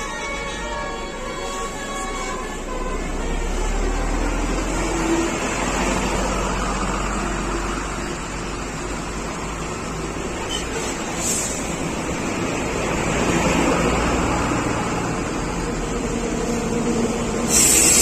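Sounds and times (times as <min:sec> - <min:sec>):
bus multi-tone horn tune: 0:00.0 - 0:08.4, 0:14.2 - 0:18.0
bus engine and road noise: 0:00.0 - 0:18.0.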